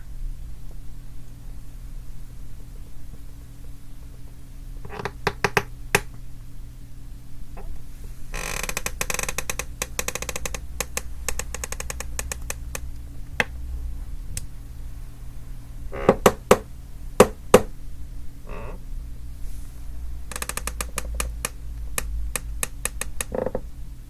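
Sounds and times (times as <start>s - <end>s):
chair creaking and clicking: 4.8s - 6.2s, 8.3s - 13.5s, 15.9s - 16.6s, 18.5s - 18.8s, 20.3s - 23.7s.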